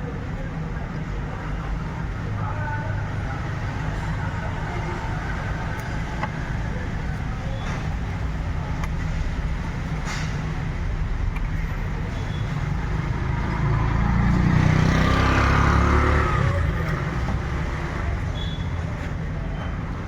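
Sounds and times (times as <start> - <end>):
vehicle engine rumbling: 0.0 - 20.0
vehicle passing by: 12.8 - 18.2.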